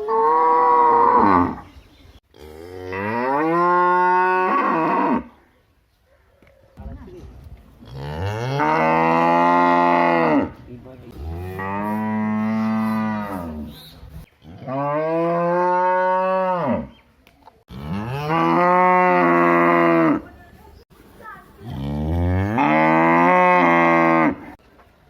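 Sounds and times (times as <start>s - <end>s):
cow mooing: 2.4s - 5.3s, 7.9s - 13.7s, 14.5s - 16.9s, 17.7s - 20.3s, 21.7s - 24.6s.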